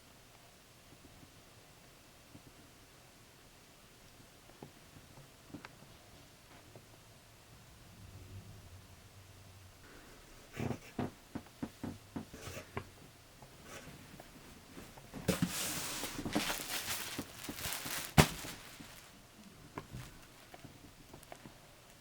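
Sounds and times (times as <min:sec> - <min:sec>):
packaging rustling and crinkling: 0:14.8 - 0:21.5.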